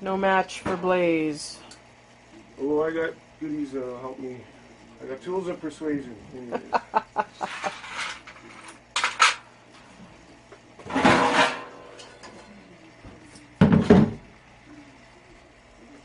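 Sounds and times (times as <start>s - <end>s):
metal clanking and scraping: 7.4s - 9.4s, 10.8s - 12.5s
loud metal clatters: 10.9s - 12.1s.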